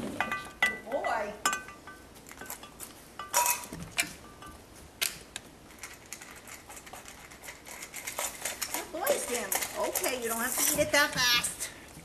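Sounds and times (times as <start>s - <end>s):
light metallic clicks and clinks: 0.2s - 5.1s.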